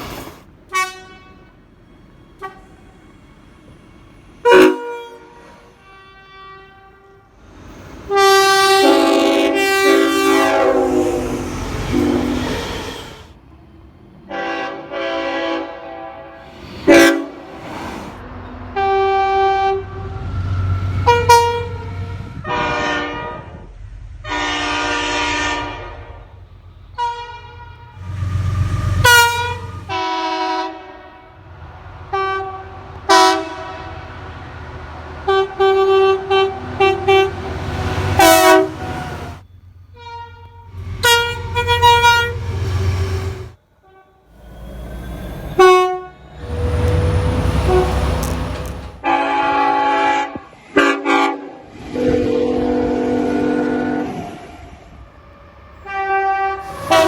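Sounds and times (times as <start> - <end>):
train horn blasts: 0.7 - 1.5, 2.4 - 2.7, 4.4 - 7.4, 8.1 - 12.7, 14.3 - 17.6, 18.7 - 26.3, 27.0 - 31.5, 32.1 - 34.5, 35.2 - 39.4, 40.0 - 44.3, 45.5 - 54.4, 55.8 - 57.0.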